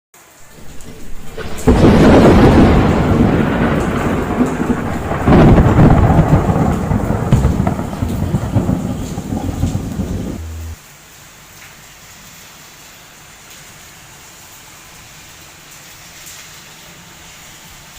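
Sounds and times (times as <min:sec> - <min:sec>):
rain: 0:00.2 - 0:17.9
thunder rumbling: 0:00.4 - 0:10.8.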